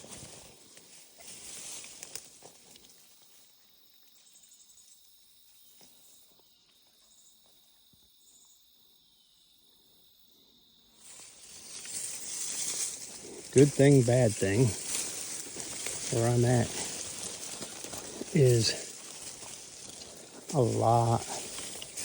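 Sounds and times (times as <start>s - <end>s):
crickets trilling: 0.0s - 22.0s
rustling: 11.0s - 22.0s.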